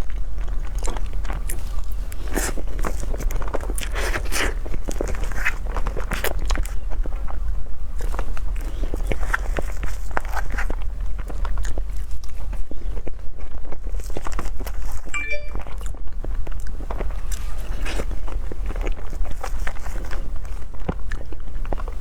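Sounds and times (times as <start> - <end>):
biting and chewing: 0.0 - 15.0, 16.5 - 22.0
brief high tone: 15.2 - 15.7.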